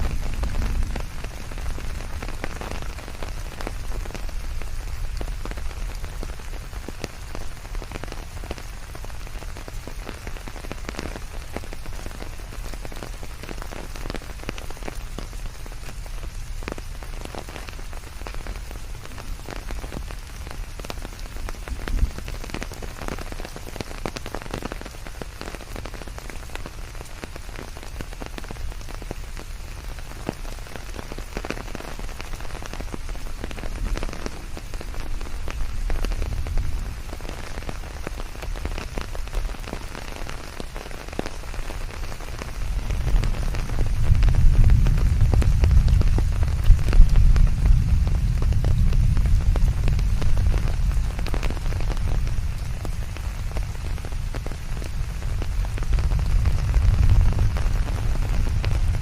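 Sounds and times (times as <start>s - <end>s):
low rumble: 0.0s - 2.9s
rain drops ticking: 0.0s - 59.0s
steady rain hiss: 0.0s - 59.0s.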